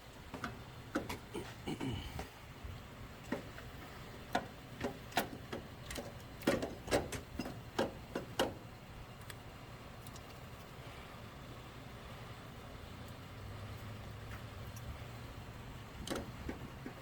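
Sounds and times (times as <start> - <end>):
alternator clicking and knocking: 0.0 - 10.7, 14.1 - 17.0.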